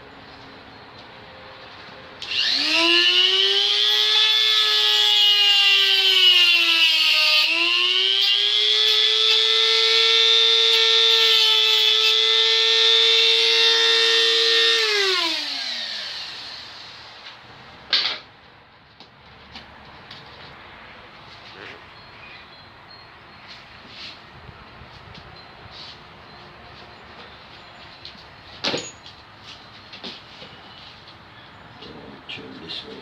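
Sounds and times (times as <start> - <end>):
rotary tool whining: 2.2 - 17.2.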